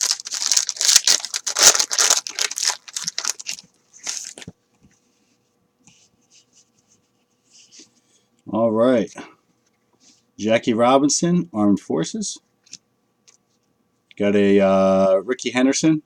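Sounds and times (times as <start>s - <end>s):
wrapper tearing and crinkling: 0.0s - 4.5s.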